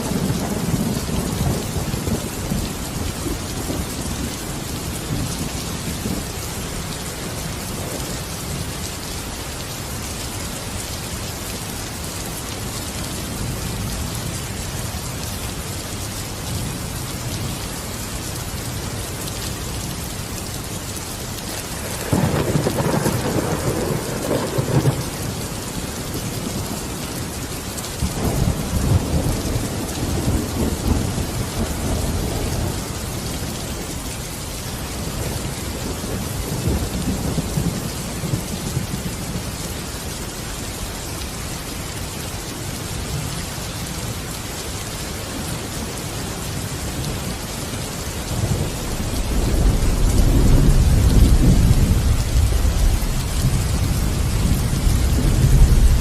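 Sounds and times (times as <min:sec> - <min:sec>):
rolling thunder: 0:00.0 - 0:06.4, 0:21.7 - 0:27.4, 0:28.0 - 0:33.5, 0:48.3 - 0:56.0
heavy rain: 0:00.0 - 0:56.0.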